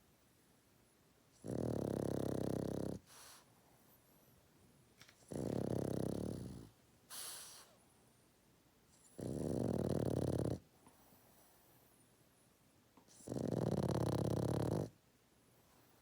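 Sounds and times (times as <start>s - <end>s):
pet snoring: 1.4s - 3.3s, 5.2s - 7.5s, 9.0s - 10.7s, 13.1s - 15.0s
short hissing breath: 7.1s - 7.8s.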